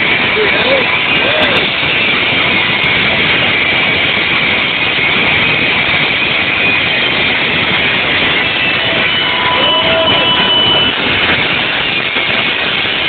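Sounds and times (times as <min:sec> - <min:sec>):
distorted loud car stereo: 0:00.0 - 0:13.0.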